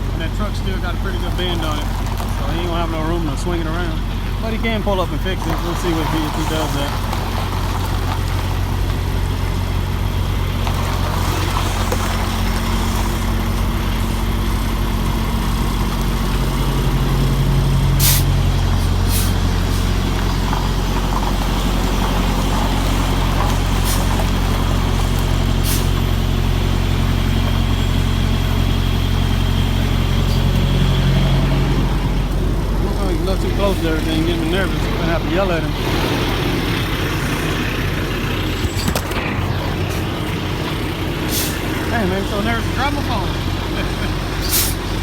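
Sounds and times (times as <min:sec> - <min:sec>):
diesel engine running: 0:00.0 - 0:45.0
air brake hisses: 0:18.0 - 0:19.9, 0:25.6 - 0:25.9, 0:41.3 - 0:41.7, 0:44.4 - 0:44.8.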